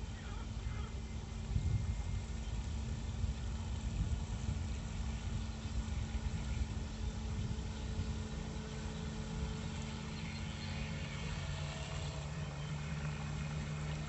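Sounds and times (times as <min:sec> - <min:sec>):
electric boat motor humming: 0:00.0 - 0:14.0
low rumble: 0:00.0 - 0:14.0.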